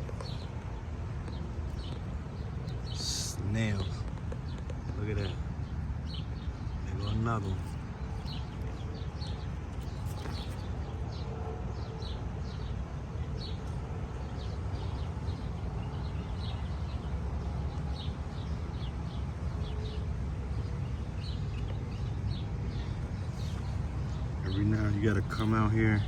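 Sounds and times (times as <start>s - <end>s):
steady low rumble: 0.0s - 11.2s
small birds chirping: 0.0s - 26.0s.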